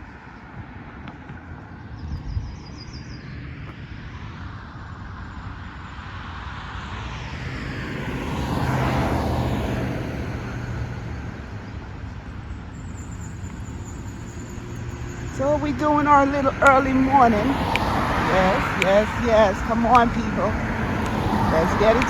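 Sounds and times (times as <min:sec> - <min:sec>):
background traffic: 0:00.0 - 0:22.0
vehicle passing by: 0:06.0 - 0:12.1, 0:13.0 - 0:22.0
bird chirping: 0:12.7 - 0:22.0.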